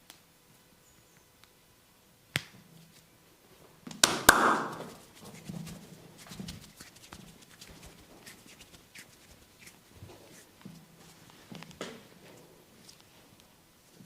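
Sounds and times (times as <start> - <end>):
body massage cracks: 3.9 - 12.0
rustling: 4.6 - 14.0
soft rubbing: 4.6 - 14.0.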